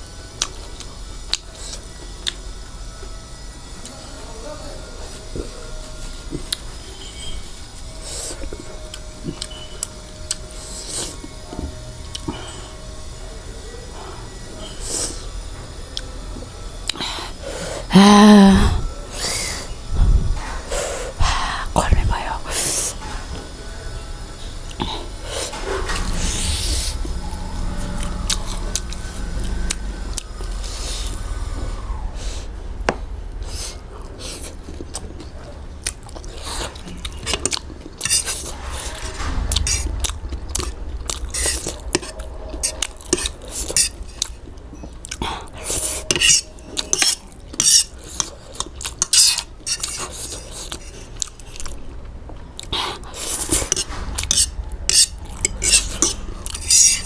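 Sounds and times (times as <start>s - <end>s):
chewing: 7.9s - 12.7s, 33.4s - 57.0s.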